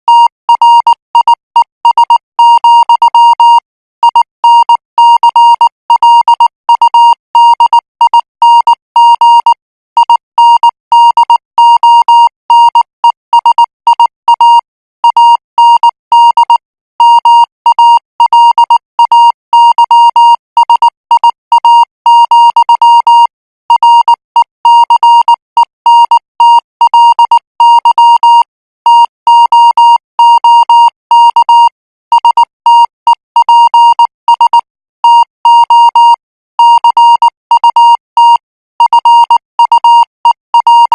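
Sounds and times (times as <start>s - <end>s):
morse code beeps: 0.1s - 40.9s.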